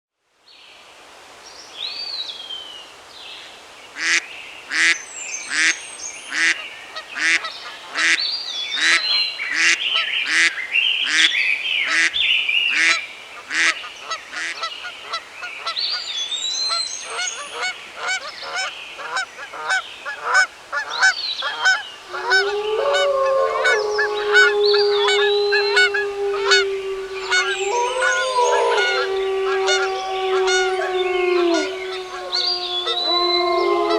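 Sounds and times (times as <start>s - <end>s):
birds calling: 22.1s - 33.9s
long low held call: 22.1s - 33.9s
loud repeated bird calls: 22.1s - 33.9s.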